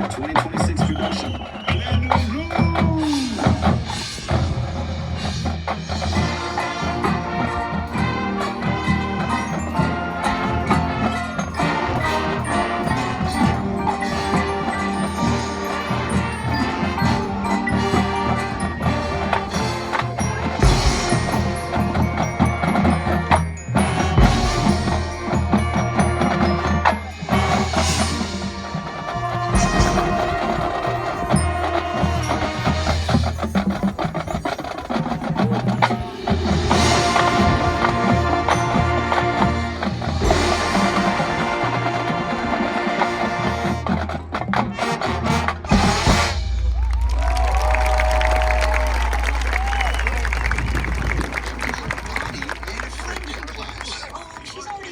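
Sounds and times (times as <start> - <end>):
marching band playing: 0.0 - 54.9
percussive strikes: 2.2 - 53.6
ringing mallet percussion: 5.9 - 54.5
percussion clicks and taps: 50.6 - 54.9.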